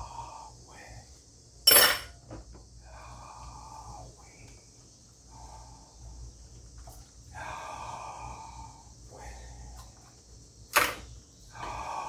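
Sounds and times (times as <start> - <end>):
dish clacking in a sink: 1.7 - 2.2.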